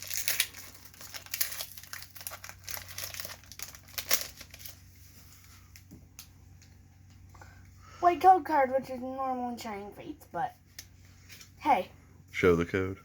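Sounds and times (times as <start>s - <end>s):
foil wrapper crinkling: 0.0s - 6.7s.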